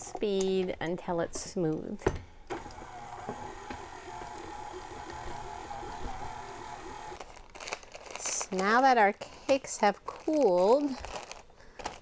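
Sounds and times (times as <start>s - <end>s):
electric mixer running: 2.5s - 7.2s.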